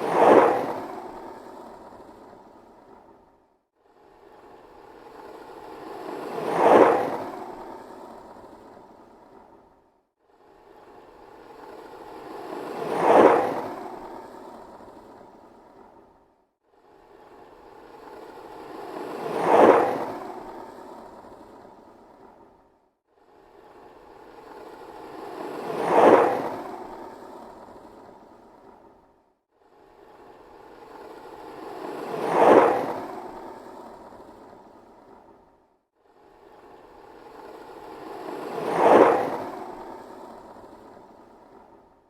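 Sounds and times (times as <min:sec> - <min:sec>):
skateboard wheels rumbling past: 0:00.0 - 0:02.3, 0:05.8 - 0:08.2, 0:12.3 - 0:14.4, 0:18.6 - 0:21.4, 0:25.0 - 0:27.8, 0:30.9 - 0:35.3, 0:37.2 - 0:41.8.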